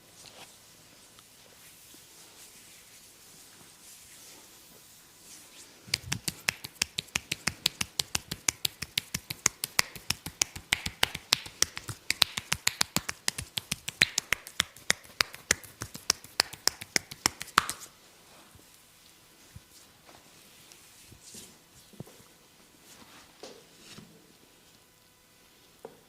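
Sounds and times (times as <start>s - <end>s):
hands slapping in percussive massage: 5.9s - 17.9s.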